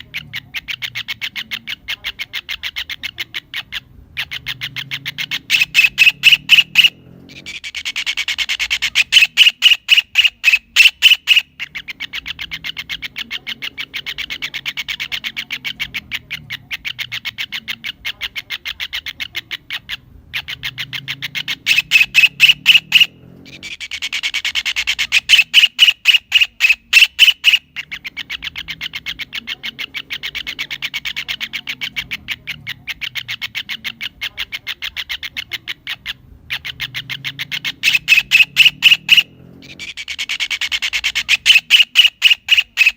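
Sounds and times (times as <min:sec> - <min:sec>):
kingfisher calls: 0:00.0 - 0:42.9.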